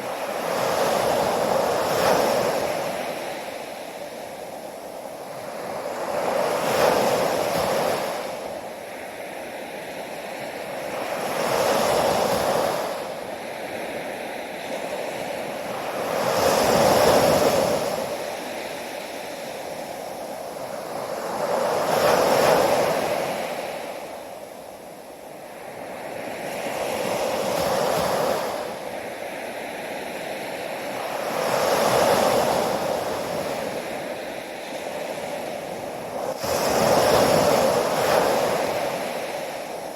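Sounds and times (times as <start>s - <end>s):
ocean waves breaking: 25.5s - 39.9s.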